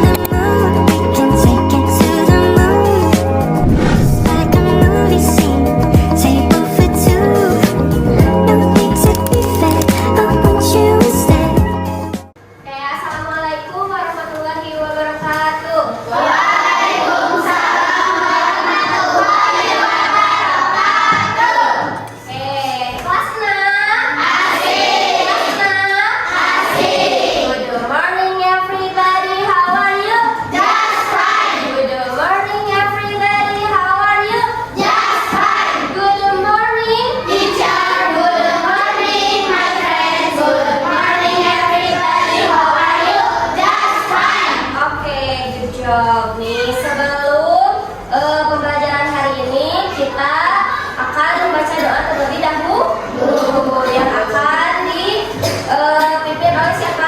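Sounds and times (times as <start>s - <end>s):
children speaking in unison: 16.1s - 27.8s, 37.0s - 44.8s, 49.8s - 52.4s.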